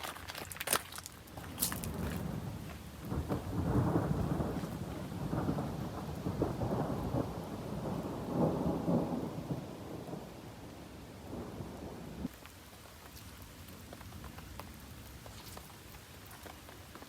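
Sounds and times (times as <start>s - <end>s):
steady rain: 0.0s - 17.0s
thunder rumble: 1.4s - 12.3s.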